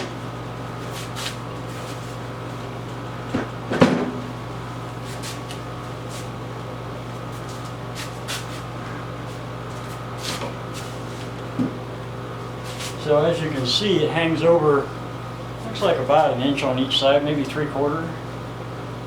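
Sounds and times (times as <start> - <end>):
steady low hum: 0.0 - 19.0
planer knocks and clunks: 3.3 - 4.2.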